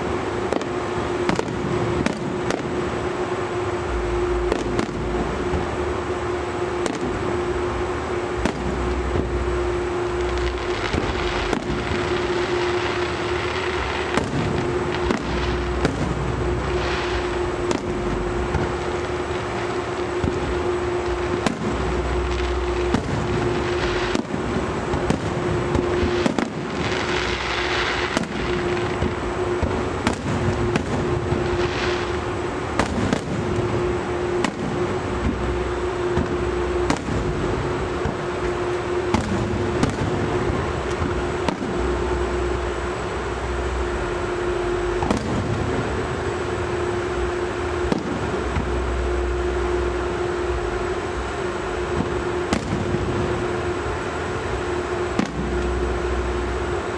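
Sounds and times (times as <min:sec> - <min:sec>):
hissing crackle: 0:00.0 - 0:56.9
firework shells bursting: 0:08.3 - 0:42.0.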